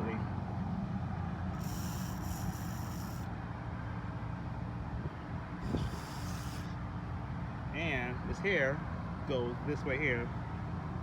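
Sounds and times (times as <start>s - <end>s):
aerosol spray hissing: 1.6s - 3.2s, 5.6s - 6.7s.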